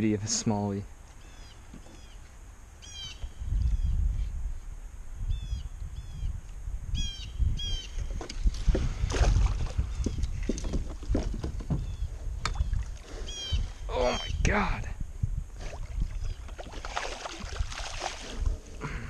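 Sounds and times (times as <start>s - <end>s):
bird chirping: 1.1s - 4.0s
low rumbling: 8.5s - 19.0s.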